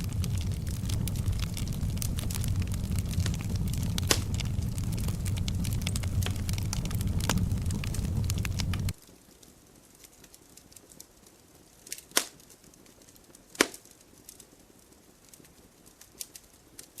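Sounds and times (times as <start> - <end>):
sharp fire pops: 0.0 - 9.0
campfire crackling: 0.0 - 16.9.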